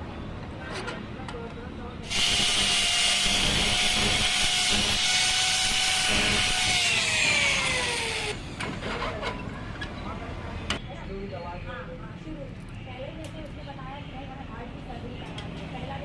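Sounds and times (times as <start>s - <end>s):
electric power tool whining: 2.1s - 8.6s.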